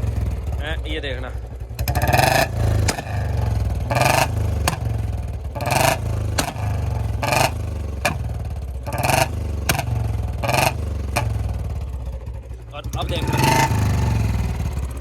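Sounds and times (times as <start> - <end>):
motorcycle engine revving: 0.0 - 15.0
exhaust backfire cracks: 1.8 - 11.8.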